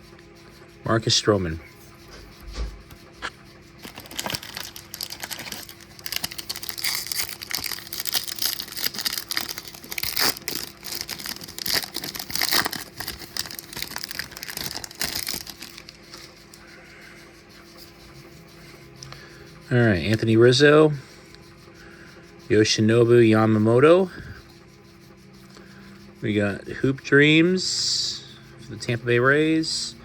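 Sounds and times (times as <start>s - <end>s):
foil wrapper tearing and crinkling: 3.8s - 16.0s.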